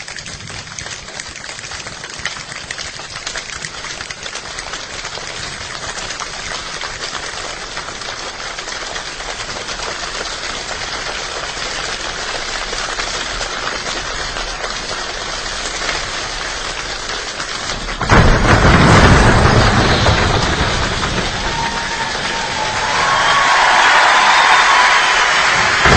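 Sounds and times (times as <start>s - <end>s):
steady rain falling: 0.0s - 25.9s
low thunder rumble: 17.7s - 23.6s, 25.5s - 25.9s.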